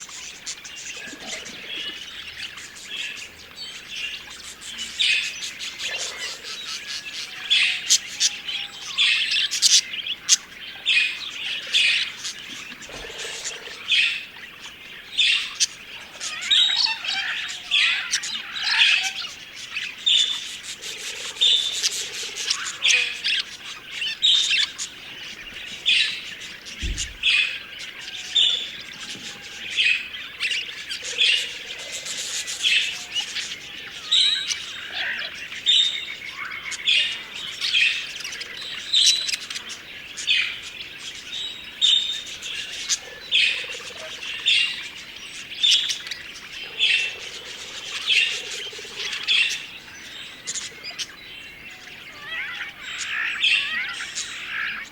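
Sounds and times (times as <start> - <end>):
budgerigars chirping and warbling: 0.0 - 54.9
low thump: 26.8 - 27.3.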